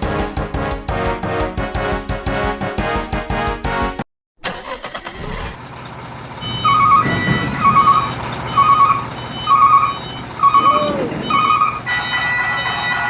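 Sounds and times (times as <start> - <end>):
music: 0.0 - 4.0
construction vehicle engine rumbling: 5.0 - 13.0
reversing alarm beeping: 6.4 - 13.0.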